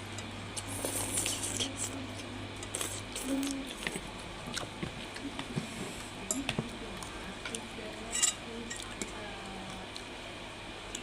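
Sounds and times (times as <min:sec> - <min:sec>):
low steady hum: 0:00.0 - 0:11.0
wet chewing and squelching: 0:00.5 - 0:05.5.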